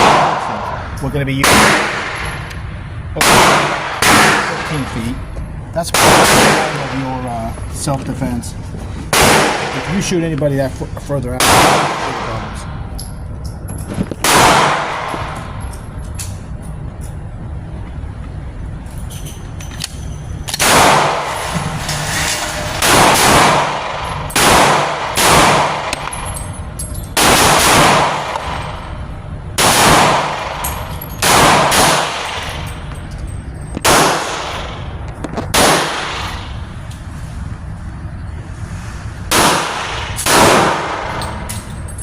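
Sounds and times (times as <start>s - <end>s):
pistol shots with echo: 0.0s - 0.8s, 1.4s - 2.5s, 3.2s - 5.0s, 5.9s - 7.1s, 9.1s - 10.1s, 11.4s - 12.6s, 14.2s - 15.6s, 20.6s - 21.4s, 22.8s - 26.2s, 27.2s - 28.8s, 29.6s - 32.7s, 33.8s - 36.5s, 39.3s - 41.4s.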